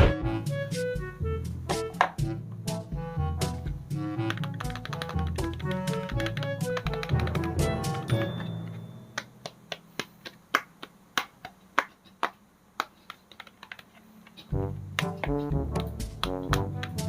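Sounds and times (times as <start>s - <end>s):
music with brass melody: 0.0s - 8.4s, 14.5s - 17.0s
sharp clicks and taps: 4.2s - 17.0s.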